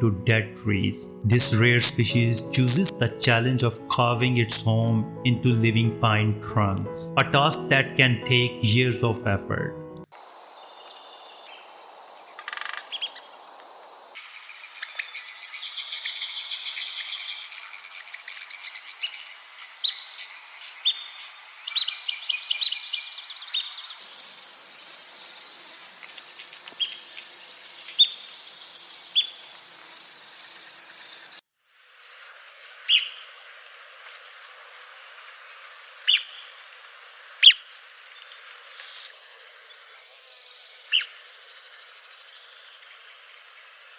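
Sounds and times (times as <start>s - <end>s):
woodpeckers calling: 14.4s - 24.0s.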